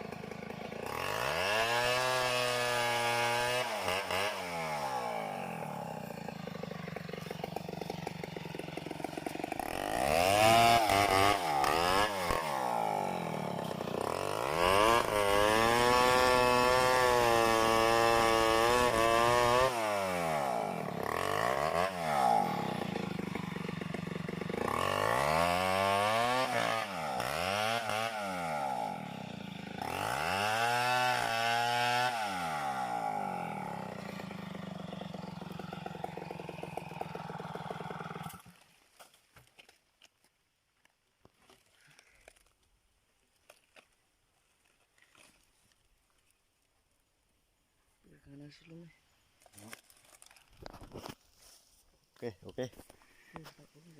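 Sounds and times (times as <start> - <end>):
chainsaw revving: 0.0 - 38.6.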